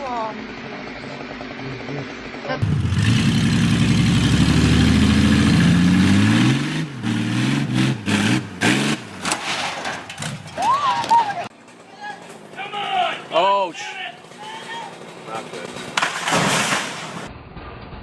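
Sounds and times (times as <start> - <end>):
engine running hard: 0.0 - 9.4, 11.6 - 16.0.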